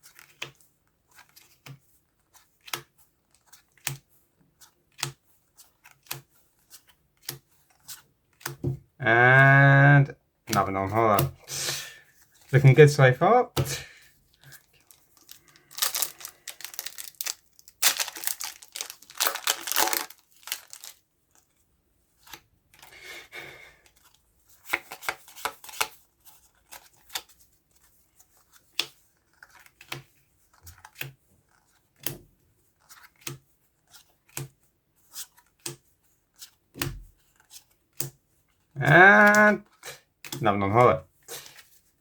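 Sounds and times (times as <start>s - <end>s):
cards clicking and rustling: 0.0s - 8.6s, 14.3s - 21.6s, 23.8s - 27.4s, 28.2s - 32.2s
foil wrapper tearing: 14.6s - 21.0s.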